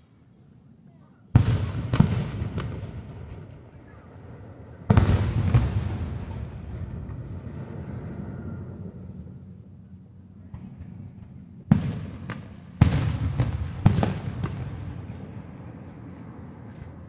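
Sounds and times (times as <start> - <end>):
fireworks booming: 1.3 - 8.2, 10.5 - 15.8
rolling rumble: 2.0 - 12.6.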